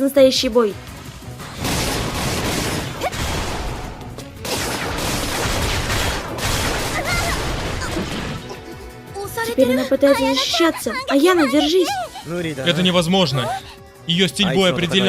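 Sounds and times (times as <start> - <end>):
music: 0.0 - 15.0
cartoon blasts and impacts: 0.8 - 8.5.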